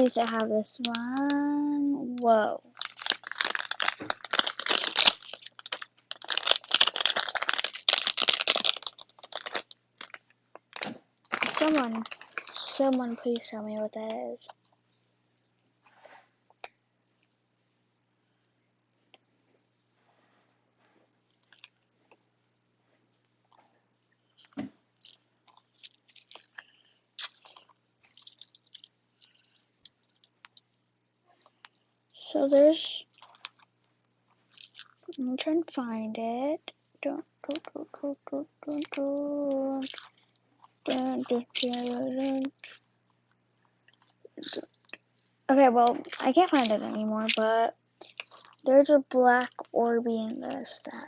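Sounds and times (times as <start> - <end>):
clicks and crackles of handled objects: 0.0 - 1.4, 2.1 - 14.8, 21.3 - 22.2, 24.4 - 30.7, 31.4 - 35.2, 37.4 - 37.8, 38.6 - 42.8, 43.9 - 51.0
plastic packaging crinkling: 0.0 - 1.5, 2.1 - 14.0, 21.3 - 21.8, 24.3 - 30.6, 31.4 - 35.4, 37.4 - 42.8, 43.9 - 51.0.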